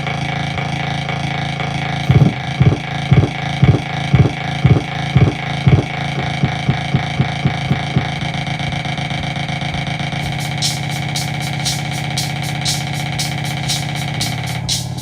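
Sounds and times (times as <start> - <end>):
low thumps pulsing: 2.1 - 8.8.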